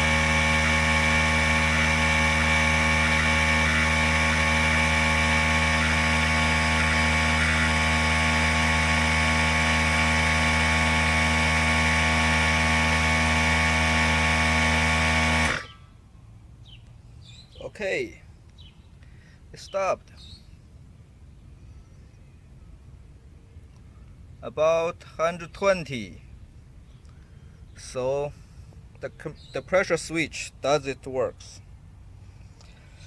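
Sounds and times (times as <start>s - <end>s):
air compressor running: 0.0s - 15.8s.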